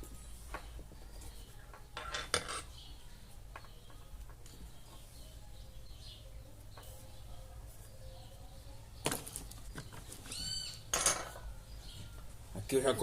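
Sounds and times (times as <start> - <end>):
metal parts clinking and knocking: 2.0 - 2.7, 10.9 - 11.4.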